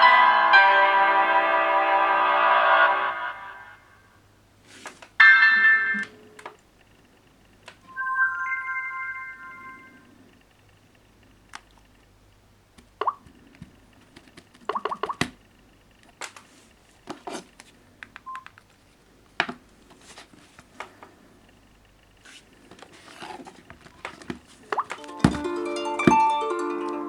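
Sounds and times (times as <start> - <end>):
short electronic beeps: 7.9 - 10.1.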